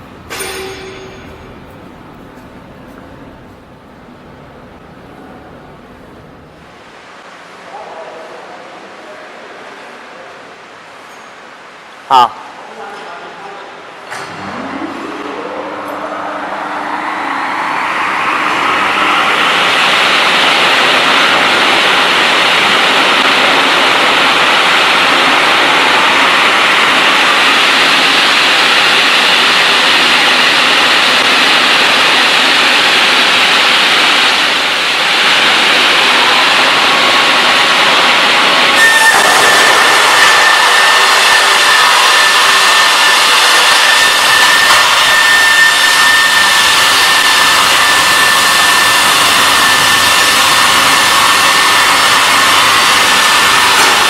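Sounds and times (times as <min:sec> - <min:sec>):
high whine: 0:00.0 - 0:07.2, 0:14.0 - 0:54.0
rip saw running: 0:17.8 - 0:54.0.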